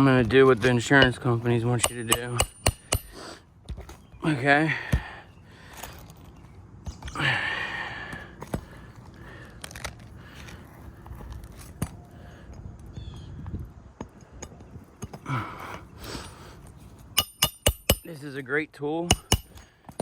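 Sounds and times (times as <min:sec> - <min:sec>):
scraping and crunching under shingle: 0:00.0 - 0:07.3, 0:08.0 - 0:12.4.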